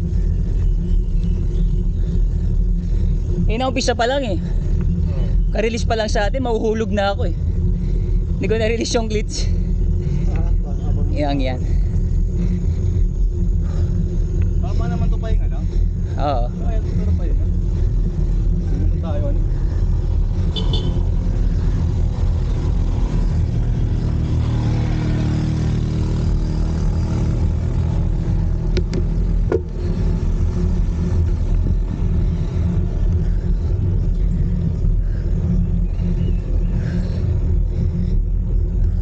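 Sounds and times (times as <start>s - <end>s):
bicycle road noise: 0.0s - 39.0s
wind buffeting microphone: 26.8s - 39.0s.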